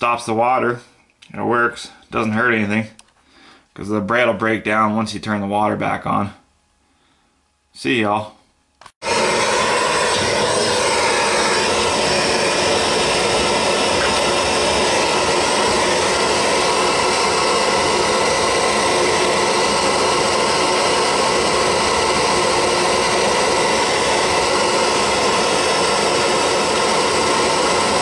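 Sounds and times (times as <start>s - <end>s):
torch flame hissing: 9.0s - 28.0s.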